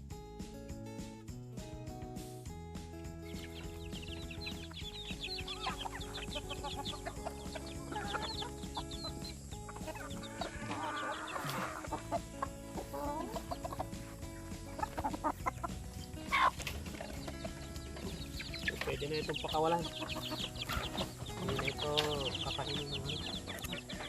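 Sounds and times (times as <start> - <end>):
background music: 0.0 - 24.0
chickens clucking: 3.2 - 24.0
chicks peeping: 3.2 - 24.0
chicken squawk: 3.4 - 14.0, 14.7 - 17.2, 18.4 - 24.0.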